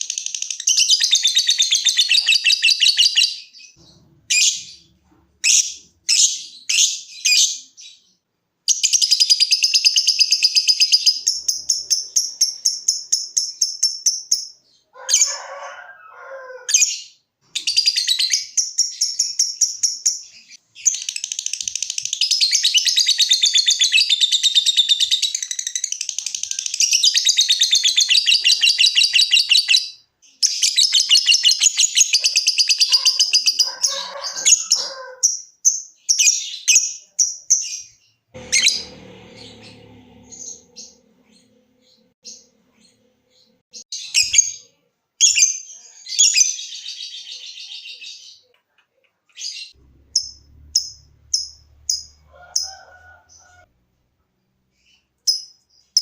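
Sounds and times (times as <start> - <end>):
low rough bird call: 38.4 - 43.6.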